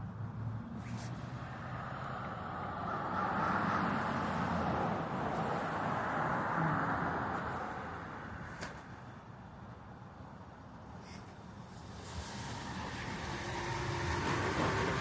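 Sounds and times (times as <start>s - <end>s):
car driving past: 11.8s - 15.0s.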